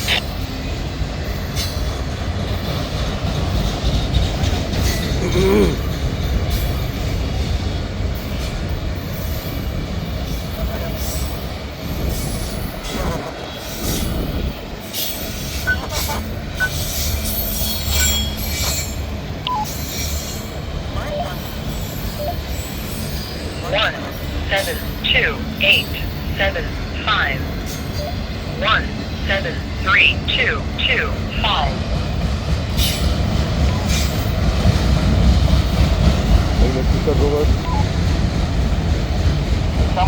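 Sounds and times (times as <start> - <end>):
freight train rumbling: 0.0 - 40.0
high wheel squeals: 14.9 - 20.6.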